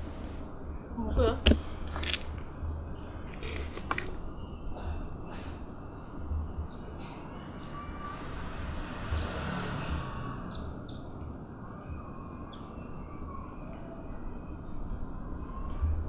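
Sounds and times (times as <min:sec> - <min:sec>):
steady low rumble: 0:00.0 - 0:00.7
small birds chirping: 0:02.4 - 0:16.0.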